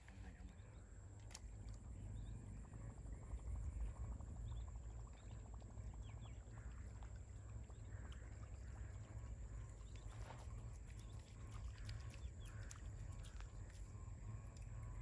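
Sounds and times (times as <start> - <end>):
wind rumble on microphone: 1.4 - 15.0
faint clicks: 10.8 - 14.8.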